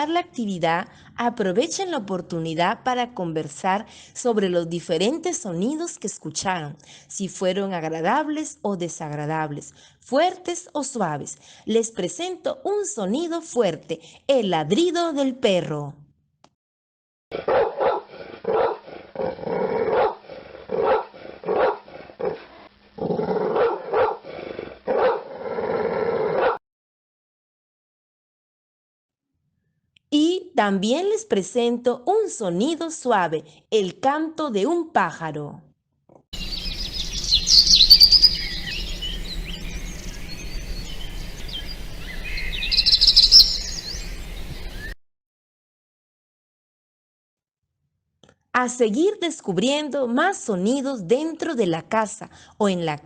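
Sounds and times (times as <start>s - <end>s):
dog barking loudly: 17.3s - 18.9s, 19.8s - 22.5s, 23.5s - 24.3s, 24.9s - 25.3s, 26.4s - 26.6s
songbird chirping and trilling: 36.4s - 45.0s.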